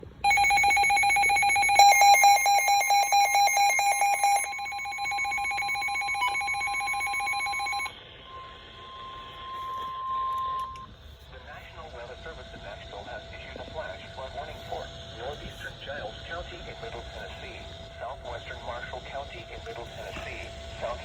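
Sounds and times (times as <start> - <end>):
steady electronic tone: 0.2 - 10.9
weather radio alert alarm: 0.2 - 10.9.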